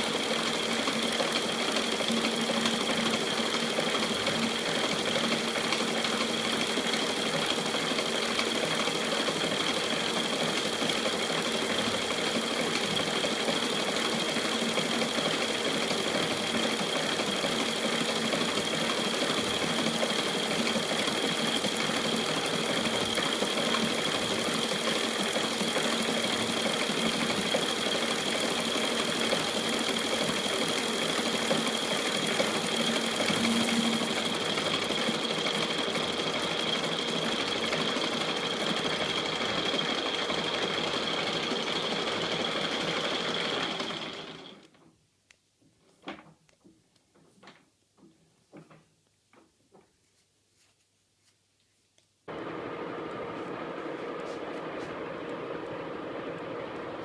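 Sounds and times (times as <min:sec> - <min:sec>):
metal lathe running with whine: 0:00.0 - 0:44.6, 0:52.3 - 0:57.0.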